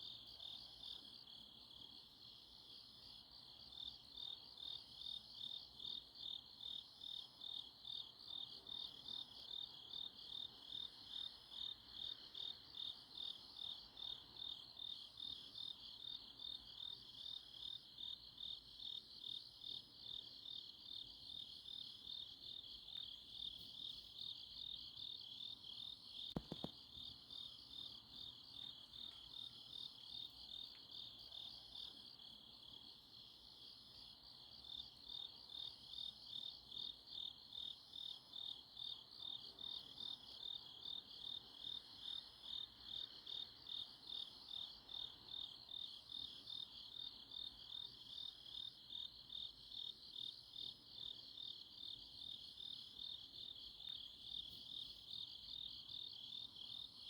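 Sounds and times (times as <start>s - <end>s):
insects chirping at night: 0.0s - 57.0s.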